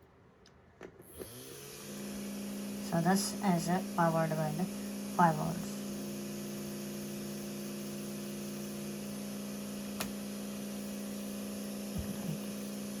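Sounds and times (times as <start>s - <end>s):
small electric motor humming: 1.1s - 13.0s
sharp click: 10.0s - 10.2s.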